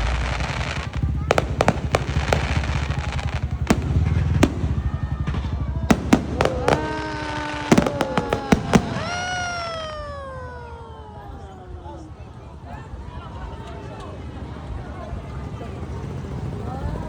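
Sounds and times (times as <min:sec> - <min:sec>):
low rumble: 0:00.0 - 0:09.4
fireworks bangs: 0:00.0 - 0:10.2
fireworks crackle: 0:00.0 - 0:10.2.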